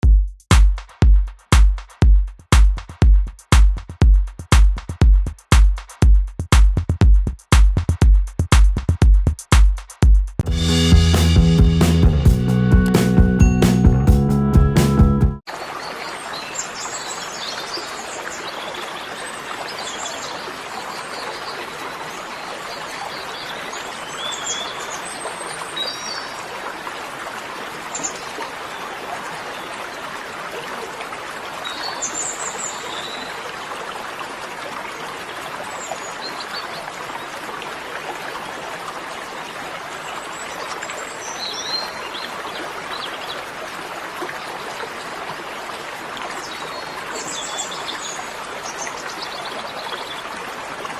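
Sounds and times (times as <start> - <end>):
running water: 15.4 - 50.9.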